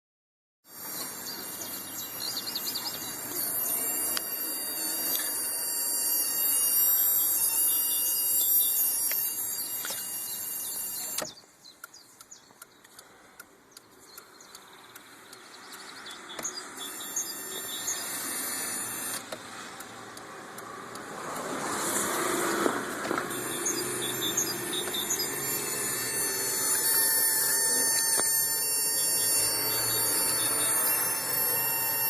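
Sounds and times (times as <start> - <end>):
high-pitched car whine: 0.7 - 11.4, 16.0 - 32.0.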